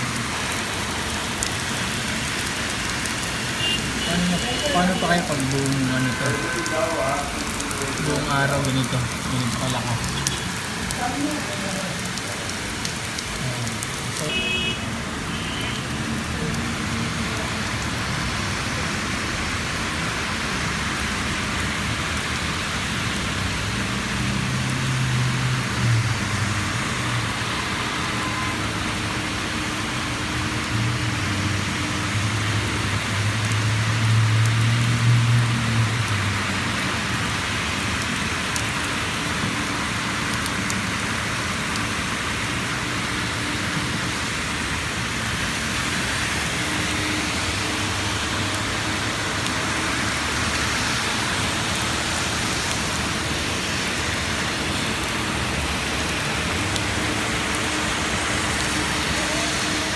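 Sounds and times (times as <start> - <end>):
heavy rain splashing: 0.0 - 59.9.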